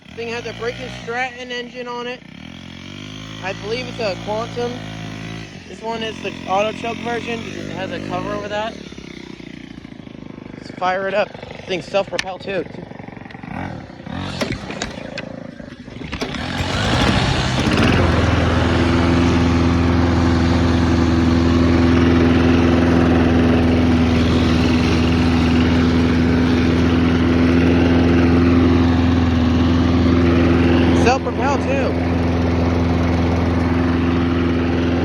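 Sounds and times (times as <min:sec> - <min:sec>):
lawn mower engine starting: 0:00.0 - 0:35.0.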